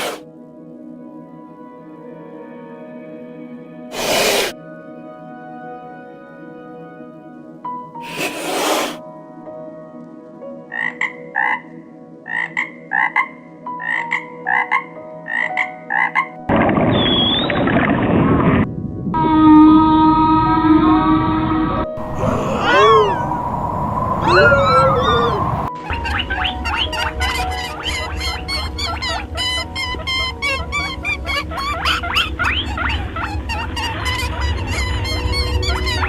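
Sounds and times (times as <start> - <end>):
background music: 0.0 - 16.6
short animal calls: 22.0 - 25.7.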